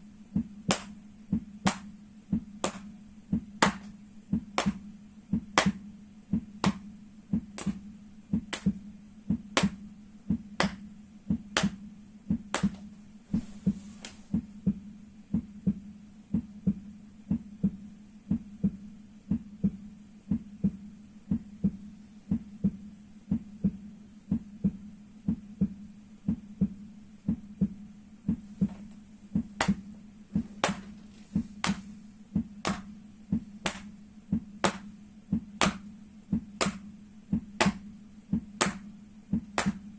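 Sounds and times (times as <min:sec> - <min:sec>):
steady low hum: 0:00.0 - 0:39.9
slapping strikes on feet: 0:00.7 - 0:01.0, 0:01.6 - 0:01.9, 0:02.6 - 0:02.9, 0:03.6 - 0:04.8, 0:05.4 - 0:05.8, 0:06.6 - 0:07.8, 0:08.4 - 0:08.8, 0:09.6 - 0:09.8, 0:10.6 - 0:14.2, 0:28.6 - 0:29.8, 0:30.4 - 0:31.9, 0:32.6 - 0:32.9, 0:33.6 - 0:33.9, 0:34.6 - 0:34.9, 0:35.6 - 0:35.9, 0:36.6 - 0:36.9, 0:37.6 - 0:39.9
soft taps: 0:27.6 - 0:29.8, 0:30.4 - 0:35.8.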